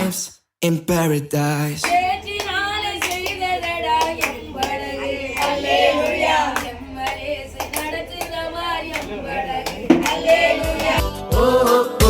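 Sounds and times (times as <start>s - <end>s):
hands clapping: 1.8s - 11.1s
group of people singing: 1.8s - 12.0s.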